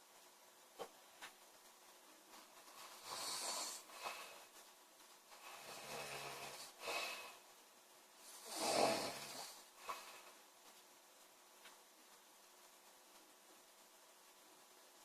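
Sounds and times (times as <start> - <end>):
woman snoring: 2.8 - 4.5, 5.3 - 7.4, 8.3 - 10.3.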